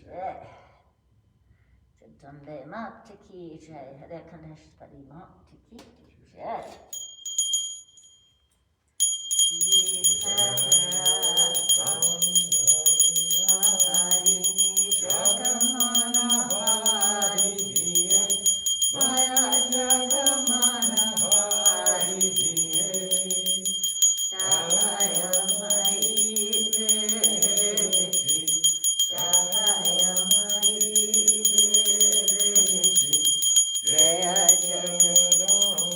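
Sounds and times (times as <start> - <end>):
bell rung rapidly: 7.0 - 8.2, 9.0 - 35.9
people singing a hymn: 9.6 - 35.9.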